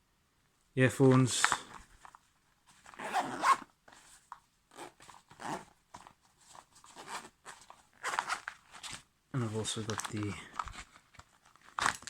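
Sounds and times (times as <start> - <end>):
zip being pulled: 3.0 - 3.7, 4.7 - 5.7, 6.9 - 8.4.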